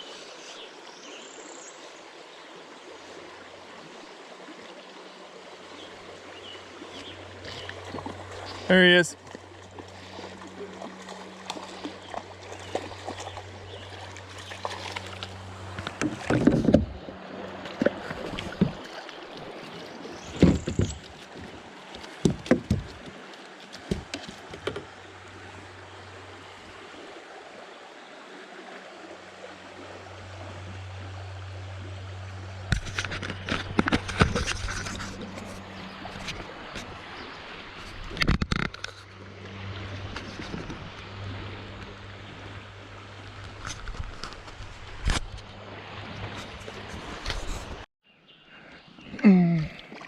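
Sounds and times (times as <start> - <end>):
water sloshing against a kayak: 0.0 - 47.9
loud splashes and knocks: 9.2 - 25.0, 32.7 - 37.0.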